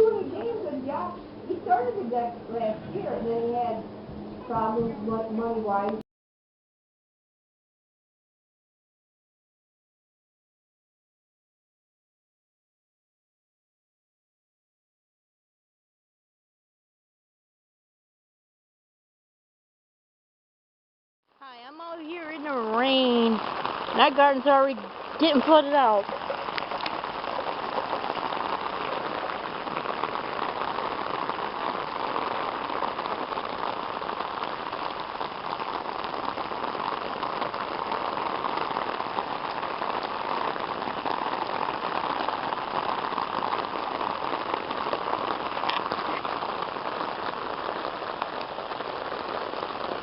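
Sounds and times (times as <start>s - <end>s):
heavy rain: 0.0s - 3.8s, 21.4s - 50.0s.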